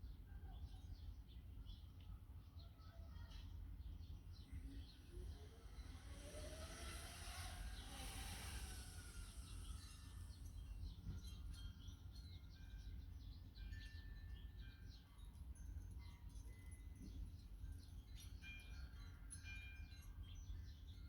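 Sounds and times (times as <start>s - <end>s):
small birds chirping: 0.5s - 15.3s.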